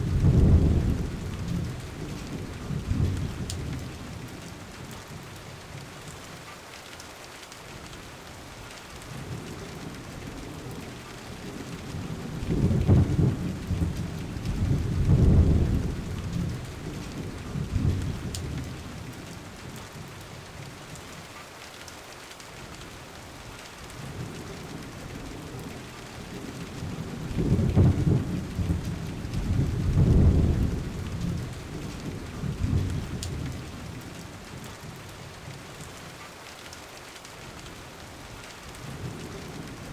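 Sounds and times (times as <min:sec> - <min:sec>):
thunder rumbling: 0:00.0 - 0:04.2, 0:11.5 - 0:19.0, 0:24.7 - 0:34.1
steady rain: 0:00.0 - 0:39.9.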